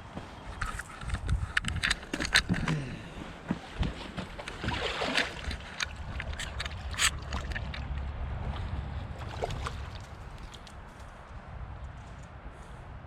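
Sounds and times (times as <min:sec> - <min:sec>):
wind rumble on microphone: 0:00.0 - 0:02.8, 0:03.8 - 0:13.0
water splashing: 0:04.0 - 0:10.8.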